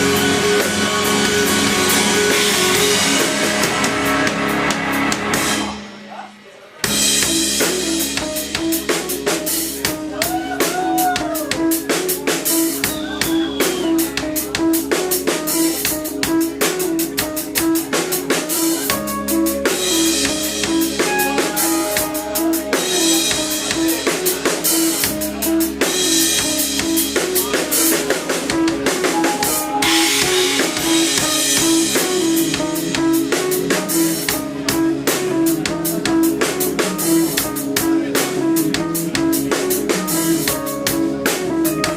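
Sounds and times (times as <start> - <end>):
heavy rock band playing: 0.0 - 6.1, 6.8 - 41.9
bending guitar notes: 18.9 - 27.4, 28.4 - 33.2.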